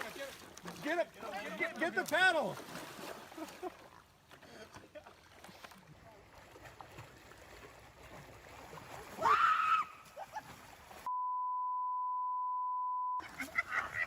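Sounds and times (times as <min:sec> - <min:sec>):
censor bleep: 0:11.1 - 0:13.2.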